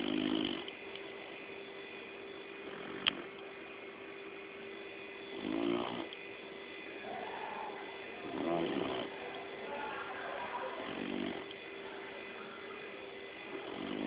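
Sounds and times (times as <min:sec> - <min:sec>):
dog snoring: 0:00.0 - 0:00.8, 0:02.6 - 0:03.3, 0:05.2 - 0:06.2, 0:07.0 - 0:09.8, 0:10.7 - 0:11.6, 0:13.4 - 0:14.0
steady hum: 0:00.0 - 0:14.0.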